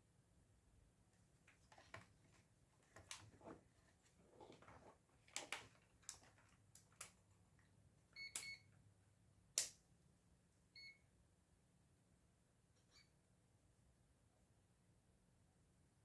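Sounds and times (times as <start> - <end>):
multimeter beeps: 8.2 - 8.7, 10.8 - 11.0.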